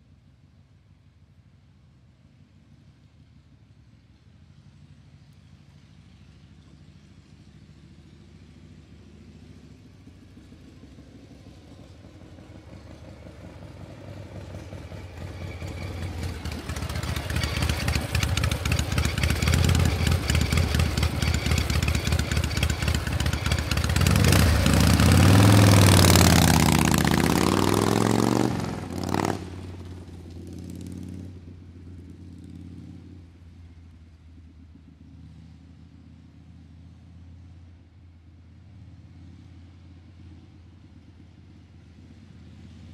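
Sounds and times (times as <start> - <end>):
motor vehicle passing by: 8.0 - 33.9.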